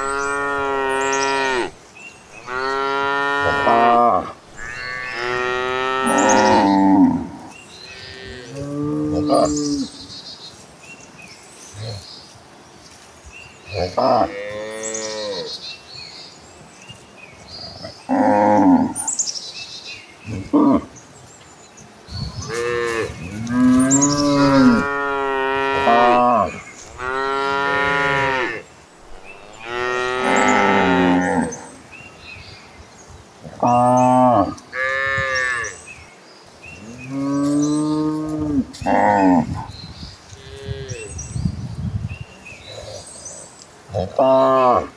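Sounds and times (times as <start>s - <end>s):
cattle mooing: 2.4s - 9.9s, 22.5s - 28.6s, 29.4s - 31.7s, 37.1s - 39.6s.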